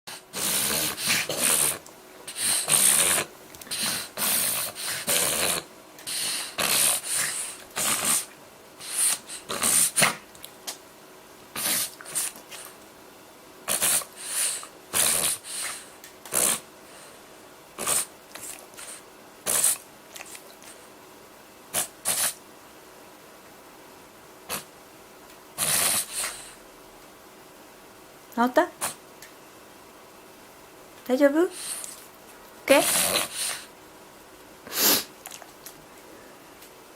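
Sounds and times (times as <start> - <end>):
dog snorting breaths: 0.1 - 10.3, 11.5 - 12.8, 13.6 - 17.2, 17.8 - 20.9, 21.7 - 22.4, 24.5 - 24.7, 25.6 - 26.6, 31.5 - 32.0, 32.7 - 33.8, 34.6 - 35.2.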